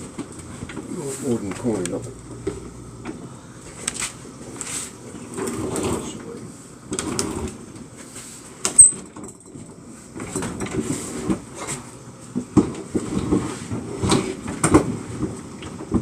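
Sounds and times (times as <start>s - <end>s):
refrigerator scraping and knocking: 4.0s - 8.3s, 8.9s - 16.0s.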